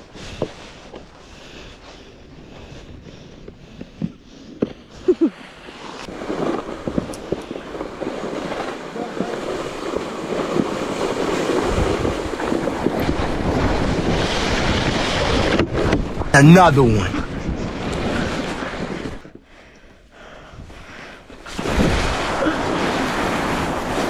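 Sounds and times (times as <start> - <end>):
sled scraping over snow: 4.0 - 19.3, 20.8 - 24.0
wind buffeting microphone: 6.0 - 19.4, 20.4 - 24.0.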